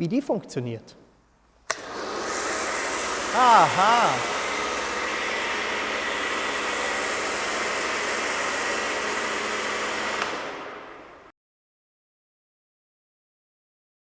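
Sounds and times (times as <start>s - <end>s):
pressure washer motor whine: 1.7s - 11.2s.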